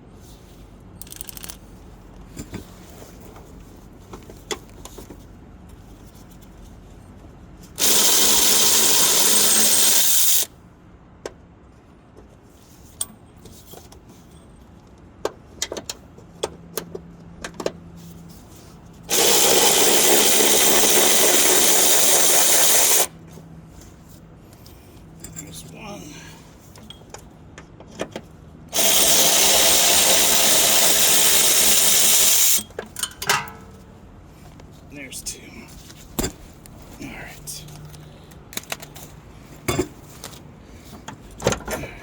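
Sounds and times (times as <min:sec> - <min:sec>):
impact wrench bursts: 0:01.0 - 0:01.6, 0:07.8 - 0:10.5, 0:19.1 - 0:23.1, 0:28.7 - 0:32.6
tools clicking and clanking: 0:01.0 - 0:01.7, 0:32.5 - 0:33.8, 0:37.6 - 0:40.4.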